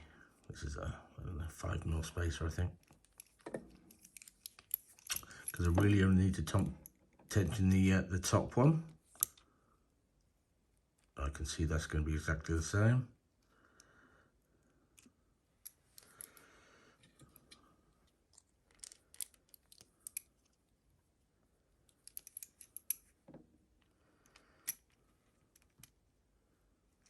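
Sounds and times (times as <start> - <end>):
small metallic clicks of lock picks: 2.8 - 5.8, 9.1 - 9.5, 17.1 - 20.7, 21.8 - 26.0.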